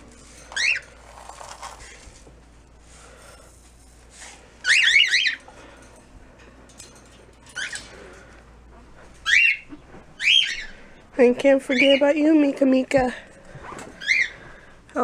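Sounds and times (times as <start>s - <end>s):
pet birds chirping: 0.2s - 1.7s, 4.6s - 5.8s, 7.4s - 13.1s, 14.0s - 15.0s.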